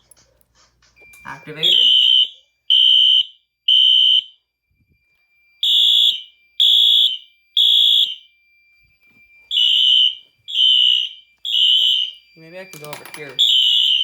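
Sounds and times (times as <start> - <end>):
fire alarm horn beeps: 1.2 - 4.5, 5.6 - 8.4, 9.4 - 14.0.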